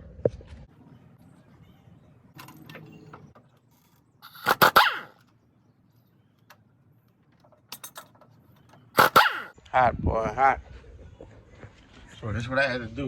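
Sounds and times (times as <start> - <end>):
dog barking: 4.7 - 5.1, 9.0 - 9.5.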